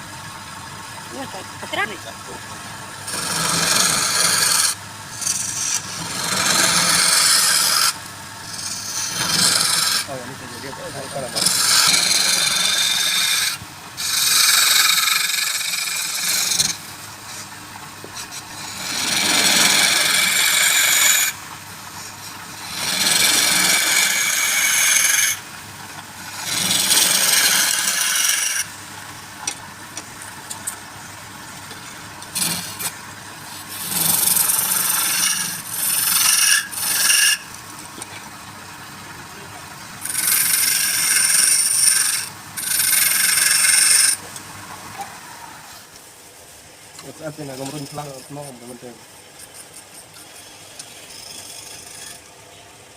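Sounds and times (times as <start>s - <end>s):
lathe tool cutting wood: 1.1s - 28.8s, 31.6s - 38.2s, 39.0s - 44.8s, 50.2s - 52.3s.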